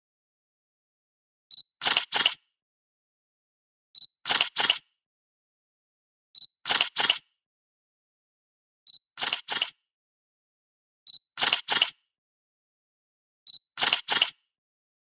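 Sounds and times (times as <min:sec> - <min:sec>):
camera focus beep: 0:01.5 - 0:02.4, 0:04.0 - 0:04.8, 0:06.4 - 0:07.2, 0:08.9 - 0:09.7, 0:11.1 - 0:12.0, 0:13.5 - 0:14.4
camera shutter clicks: 0:01.8 - 0:02.4, 0:04.2 - 0:04.8, 0:06.6 - 0:07.2, 0:09.2 - 0:09.8, 0:11.4 - 0:12.0, 0:13.8 - 0:14.4.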